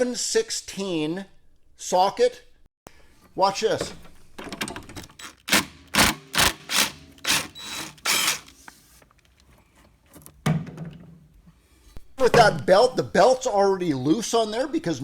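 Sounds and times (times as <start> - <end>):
power driver running: 5.5 - 8.6.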